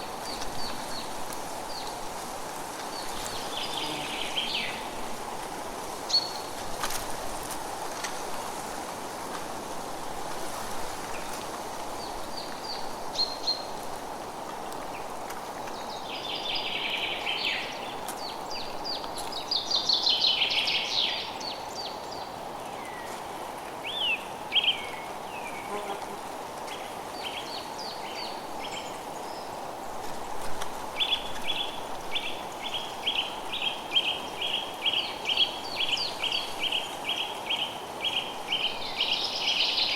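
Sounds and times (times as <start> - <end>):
steady background hiss: 0.0 - 39.9
songbirds singing and calling: 2.9 - 5.0.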